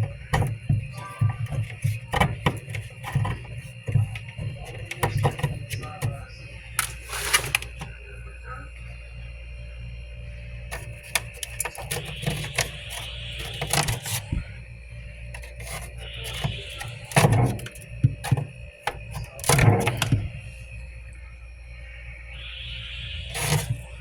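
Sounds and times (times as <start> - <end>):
steady hum: 0.0 - 24.0
frost being scraped off: 6.8 - 7.9, 10.7 - 14.4, 15.4 - 18.4, 23.3 - 23.9.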